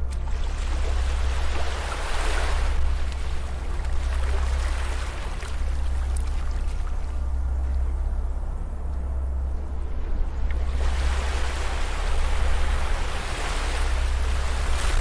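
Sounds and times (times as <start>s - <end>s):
ocean waves washing onto beach: 0.0s - 7.3s, 10.5s - 15.0s
steady low rumble: 0.0s - 15.0s.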